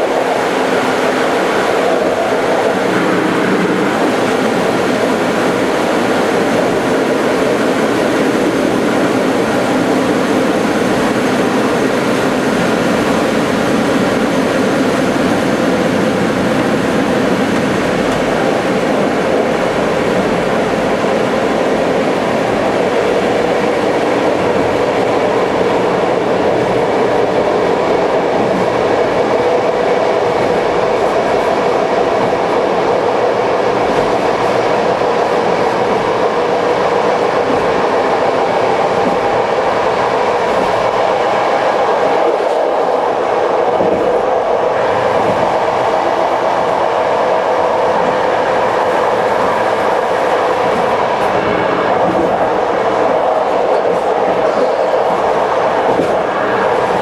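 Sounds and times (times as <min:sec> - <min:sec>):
clickety-clack of rail joints: 0:00.0 - 0:57.0
train wheels rumbling on rail: 0:00.0 - 0:57.0.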